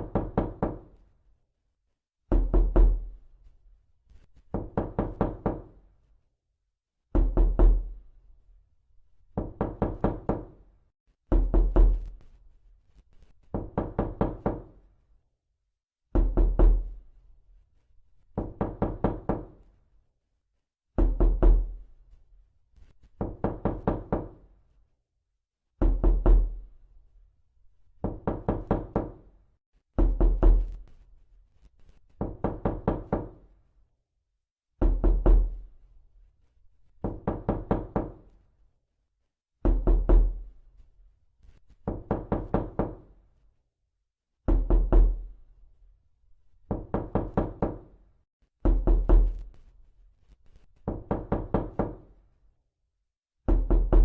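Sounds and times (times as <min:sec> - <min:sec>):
knocking on hard surface: 0:04.5 - 0:05.7, 0:28.0 - 0:29.2, 0:37.0 - 0:38.2, 0:53.5 - 0:54.0.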